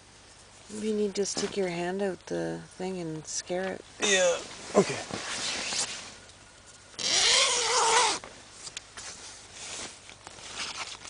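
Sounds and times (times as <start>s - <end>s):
tent fabric rustling: 4.0s - 6.3s, 7.0s - 11.0s.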